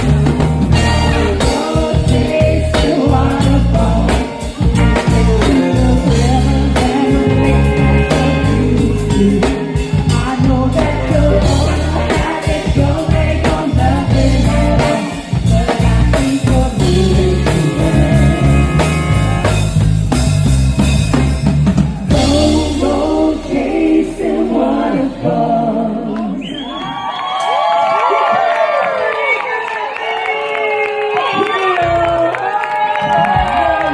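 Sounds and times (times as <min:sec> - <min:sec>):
lead singer singing: 0:00.0 - 0:19.8, 0:22.1 - 0:27.1
live band playing: 0:00.0 - 0:27.1.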